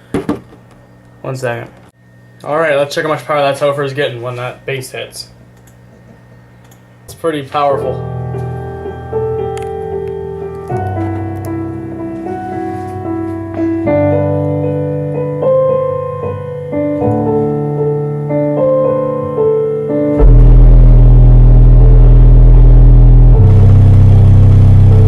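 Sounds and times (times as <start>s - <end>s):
electronic music: 19.9s - 25.0s
heavy subwoofer bass: 20.2s - 25.0s.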